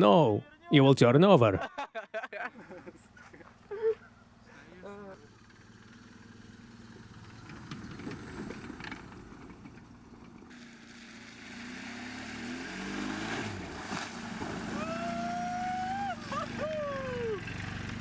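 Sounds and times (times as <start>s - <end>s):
small car engine revving: 5.2s - 18.0s.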